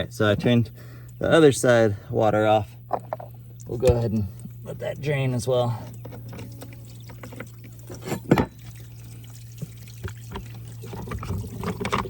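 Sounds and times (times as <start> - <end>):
steady low hum: 0.0 - 12.0
water draining and trickling: 4.4 - 12.0.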